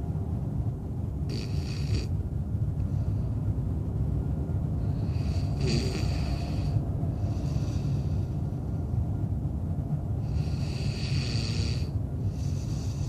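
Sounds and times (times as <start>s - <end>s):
steady low rumble: 0.0s - 13.0s
man snoring: 1.3s - 2.1s, 4.9s - 8.2s, 10.2s - 13.0s.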